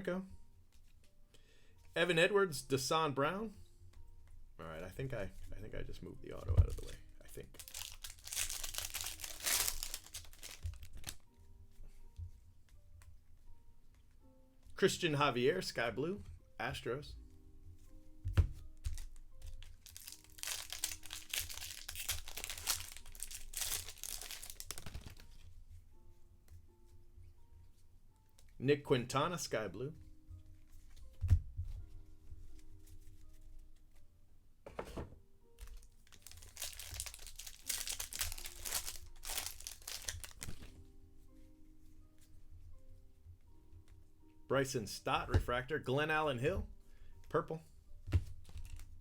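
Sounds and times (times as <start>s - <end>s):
foil wrapper crinkling: 6.7s - 11.2s, 18.9s - 25.4s, 35.6s - 40.7s, 48.4s - 49.0s.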